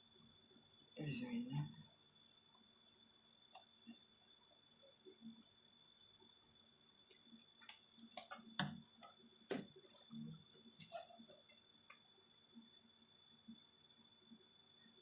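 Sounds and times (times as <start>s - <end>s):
faint high-pitched tone: 0.9s - 2.1s
small tools clicking and tapping: 7.1s - 10.0s, 10.7s - 12.0s.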